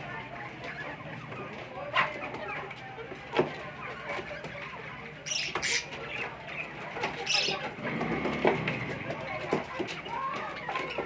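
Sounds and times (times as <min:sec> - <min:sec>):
budgerigars chattering: 0:03.7 - 0:07.9.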